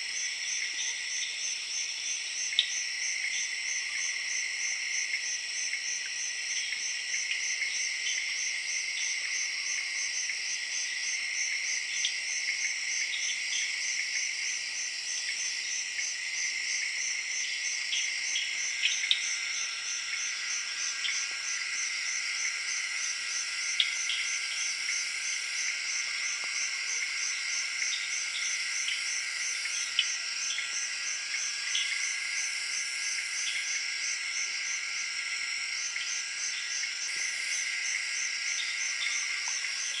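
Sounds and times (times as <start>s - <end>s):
crickets trilling: 0.0s - 40.0s
tree frogs calling: 17.5s - 32.3s.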